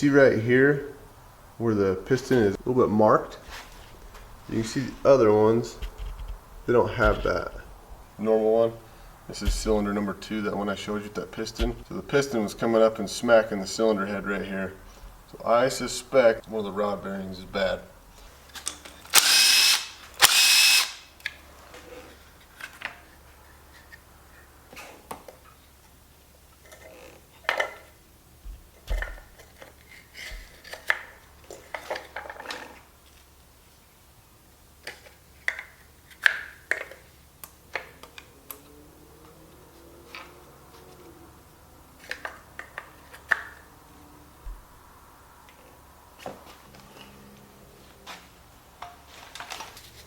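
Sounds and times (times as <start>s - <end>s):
power tool spinning out fasteners: 19.1s - 21.2s.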